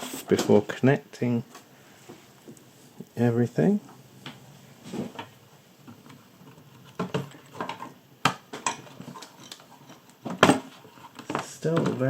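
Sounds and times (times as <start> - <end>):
computer hardware clicks and scrapes: 8.7 - 12.0.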